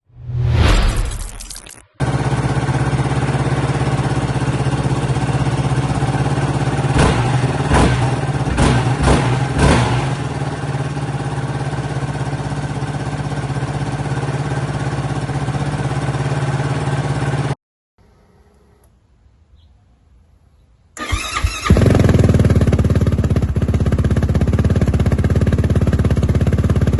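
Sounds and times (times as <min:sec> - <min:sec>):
quad engine idling: 0:02.0 - 0:17.6, 0:21.0 - 0:26.9.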